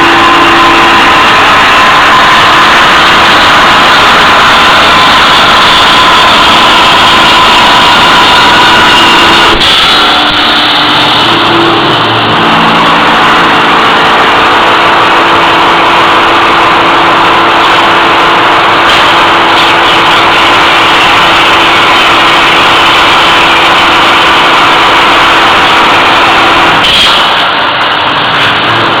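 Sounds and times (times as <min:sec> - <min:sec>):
steady hum tones: 0:00.0 - 0:26.8
loud mechanical machine noise: 0:00.0 - 0:29.0.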